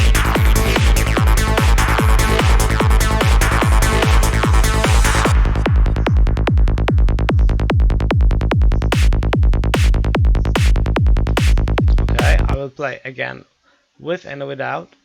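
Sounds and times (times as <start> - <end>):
synth layers: 0.0 - 6.5, 10.6 - 12.6
trance kick drum and bass: 0.0 - 12.6.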